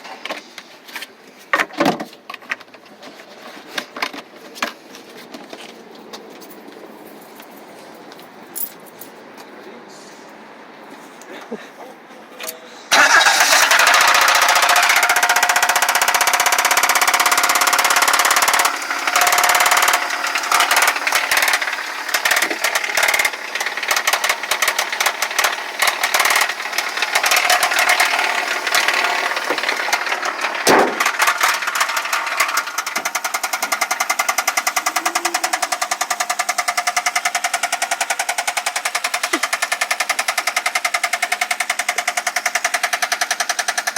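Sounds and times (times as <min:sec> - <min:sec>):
engine running unevenly: 0:12.8 - 0:43.9.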